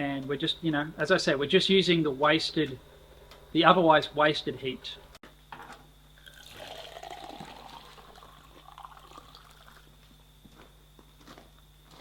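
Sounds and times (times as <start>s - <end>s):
water pouring into container: 6.2s - 9.9s.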